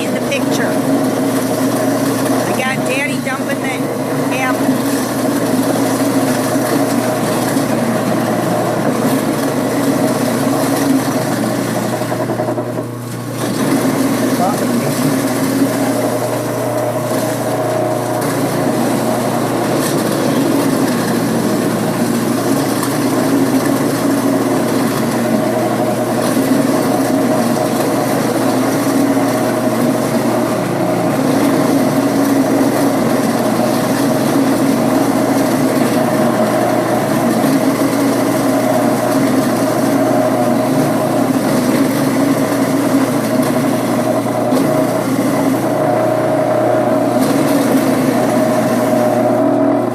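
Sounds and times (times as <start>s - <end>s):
apple grinder humming: 0.0s - 49.9s.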